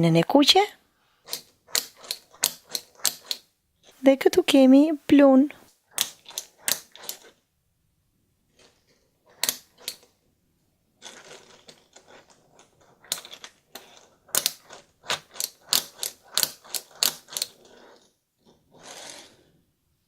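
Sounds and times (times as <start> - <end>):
plastic toys clicking and tapping: 1.2 - 4.0, 5.9 - 7.4, 8.6 - 10.1, 11.0 - 18.1.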